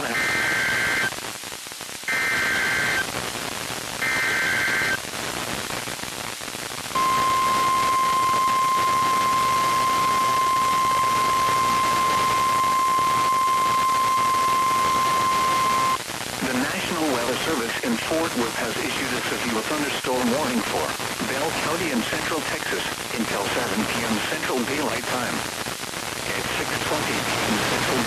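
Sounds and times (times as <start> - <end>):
steady warning alarm tone: 0.0 - 1.1, 4.0 - 5.0, 7.0 - 16.0
radio static: 0.0 - 1.3, 2.1 - 3.3, 4.0 - 5.6, 6.9 - 25.6, 26.2 - 28.0
harsh digital data bursts: 2.1 - 3.0, 4.0 - 5.0, 7.0 - 16.0.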